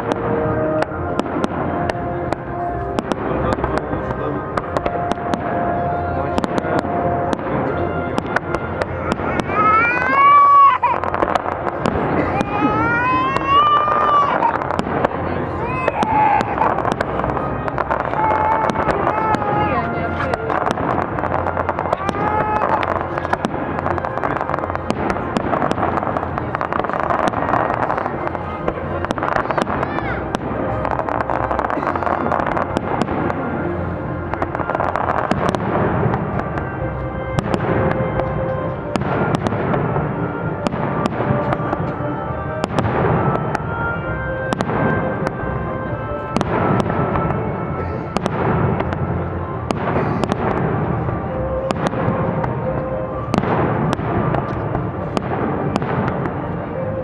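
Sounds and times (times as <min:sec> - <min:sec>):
fireworks bangs and crackling: 0:00.0 - 0:57.0
music playing: 0:00.0 - 0:57.0.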